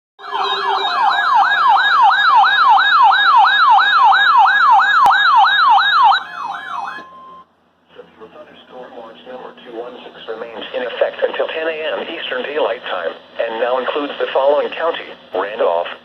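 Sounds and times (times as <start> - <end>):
steady tone: 0.2 - 4.1
electronic siren alert tone: 0.2 - 7.4.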